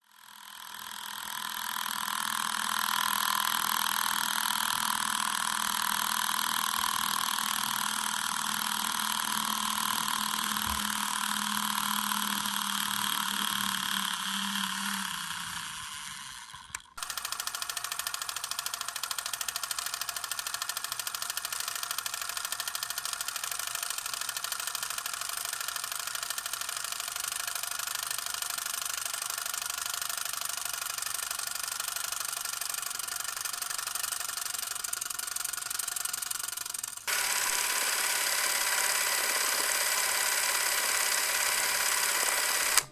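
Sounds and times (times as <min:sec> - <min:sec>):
film camera mechanical whir: 0:00.1 - 0:42.9
bright film mechanism clatter: 0:16.5 - 0:42.9.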